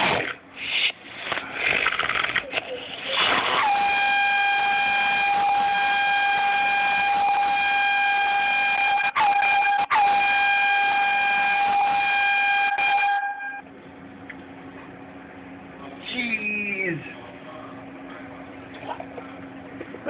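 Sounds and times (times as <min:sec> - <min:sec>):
air horn blasting: 0:03.3 - 0:13.6.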